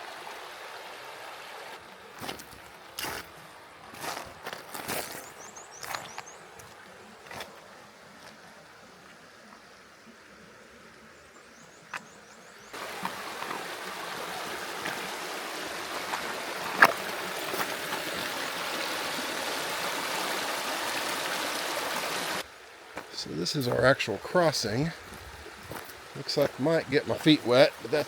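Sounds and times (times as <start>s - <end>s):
creek rushing over stones: 0.0s - 10.4s, 12.7s - 28.0s.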